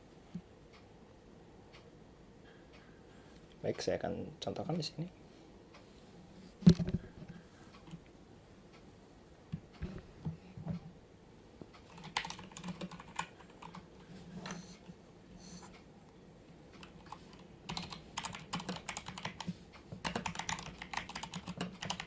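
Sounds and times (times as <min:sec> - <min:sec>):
mechanical keyboard typing: 0:11.8 - 0:13.9, 0:16.8 - 0:22.0.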